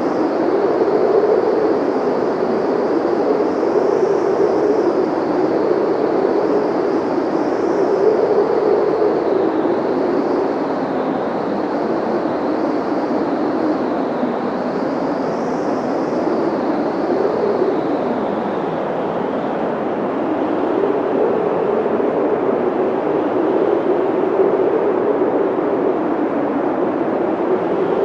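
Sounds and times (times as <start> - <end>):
blizzard wind howling: 0.0 - 28.0
wind whistling: 0.0 - 28.0.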